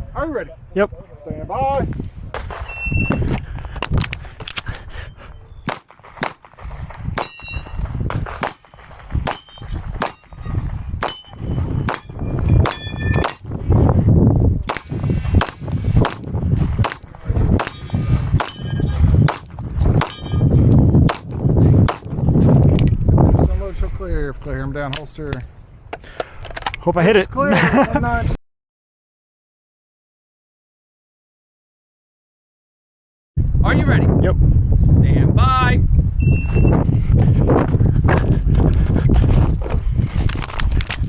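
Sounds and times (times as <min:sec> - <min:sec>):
rapid pistol shots: 0:05.7 - 0:06.6, 0:08.3 - 0:10.2, 0:14.6 - 0:17.8
bullets clanging on steel targets: 0:07.2 - 0:13.7, 0:17.6 - 0:19.4, 0:20.0 - 0:20.8
shot timer beep: 0:36.2 - 0:36.8.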